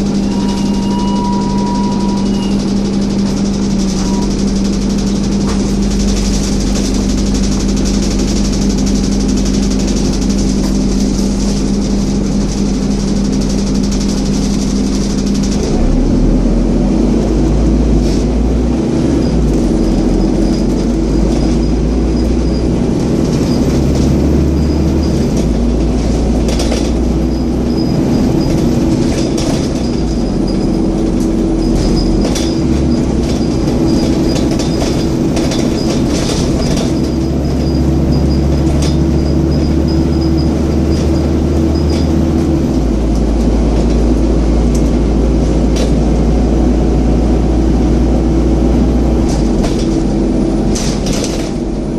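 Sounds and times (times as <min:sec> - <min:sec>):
bus body rattles: 0:00.0 - 0:51.9
bus engine droning: 0:00.0 - 0:51.9.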